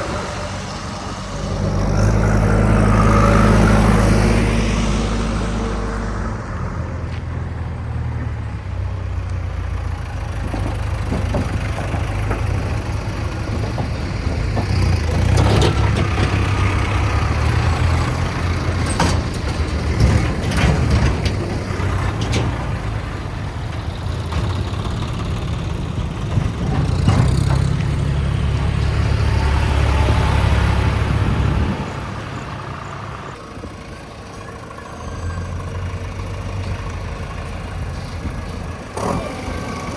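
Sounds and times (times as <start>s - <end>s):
diesel engine working: 0.0s - 39.9s
sharp metal clanks and knocks: 18.6s - 22.8s, 26.4s - 28.1s.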